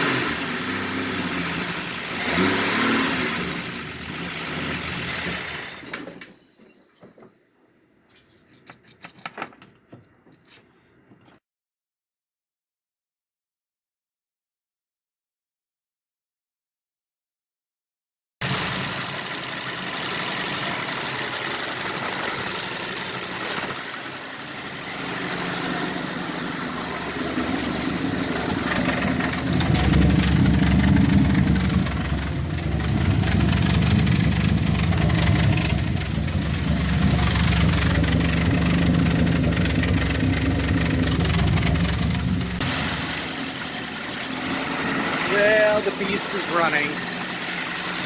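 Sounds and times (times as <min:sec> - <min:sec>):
car engine rough idle: 0:18.4 - 0:48.0.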